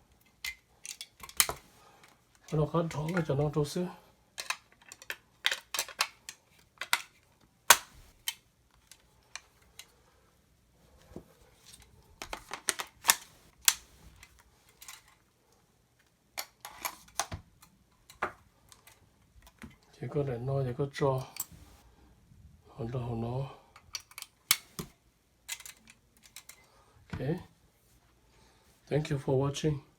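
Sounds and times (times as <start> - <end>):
metallic clicks of rifle parts: 0.1 - 3.6, 4.4 - 10.0, 12.2 - 15.2, 23.8 - 26.7.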